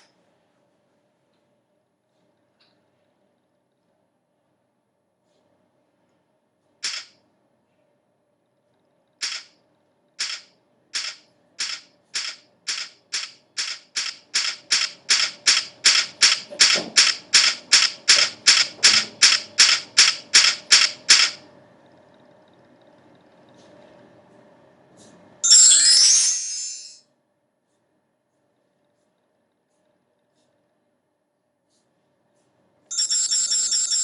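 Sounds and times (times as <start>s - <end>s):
short sharp clicks: 6.8s - 7.2s, 10.2s - 21.4s.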